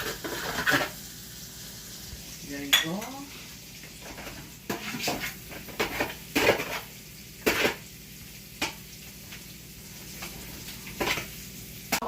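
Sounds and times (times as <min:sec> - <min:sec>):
metal ladle scraping a pan: 0:00.0 - 0:01.0, 0:04.0 - 0:07.8
faint sizzling in a pan: 0:00.0 - 0:12.0.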